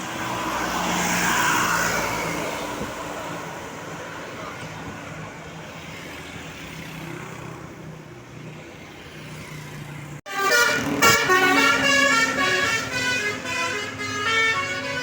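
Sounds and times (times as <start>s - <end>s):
bus horn playing melody: 10.3s - 15.0s.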